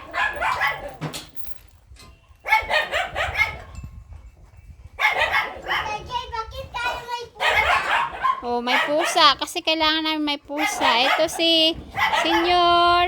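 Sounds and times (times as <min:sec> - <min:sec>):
dogs barking: 0:00.0 - 0:01.2, 0:02.4 - 0:03.9, 0:04.9 - 0:09.6, 0:10.5 - 0:13.0.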